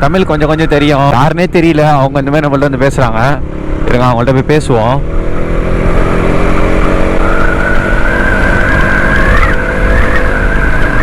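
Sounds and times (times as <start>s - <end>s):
motorcycle engine running: 0.0s - 11.0s
road and wind rumble: 0.0s - 11.0s
high whistling tone: 7.2s - 11.0s.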